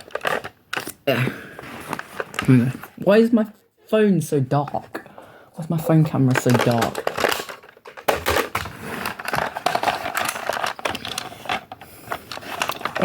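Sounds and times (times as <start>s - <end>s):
plastic toy blaster clicking and rattling: 6.0s - 13.0s.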